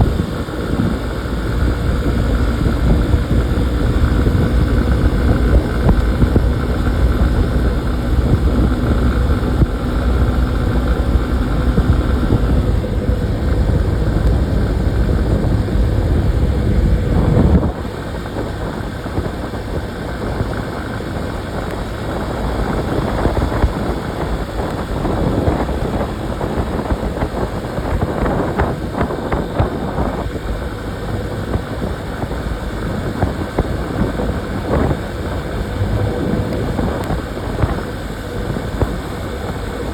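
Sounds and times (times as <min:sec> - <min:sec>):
motorcycle engine: 0:00.0 - 0:24.0, 0:32.6 - 0:39.9
road noise: 0:00.0 - 0:39.9
wind noise: 0:00.0 - 0:39.9.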